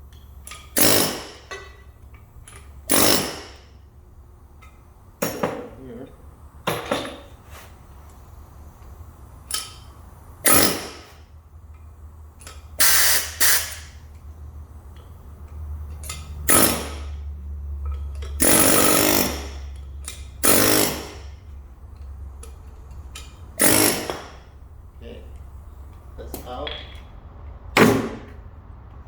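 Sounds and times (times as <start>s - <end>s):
impact wrench bursts: 0.4s - 3.9s, 9.4s - 11.3s, 12.4s - 14.1s, 15.9s - 22.2s, 23.0s - 24.6s.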